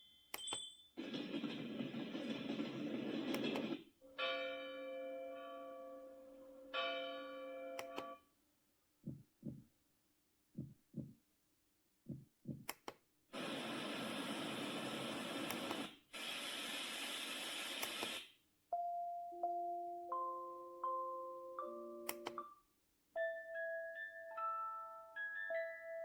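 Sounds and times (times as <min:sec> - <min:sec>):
speaker playing steady hiss: 0:13.4 - 0:18.2
chime melody of ringing tones: 0:23.2 - 0:26.0.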